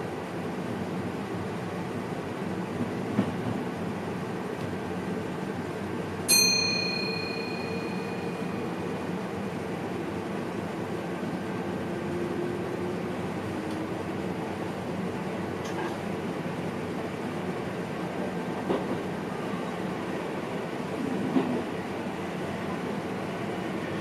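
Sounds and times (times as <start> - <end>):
train cab running noise: 0.0 - 24.0
bell-like ding: 6.3 - 8.7.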